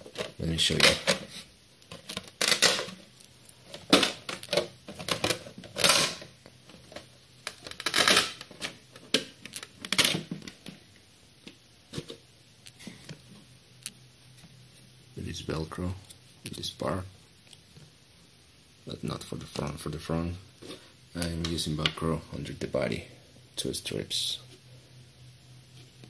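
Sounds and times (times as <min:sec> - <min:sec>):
velcro ripping apart: 0:07.5 - 0:08.5.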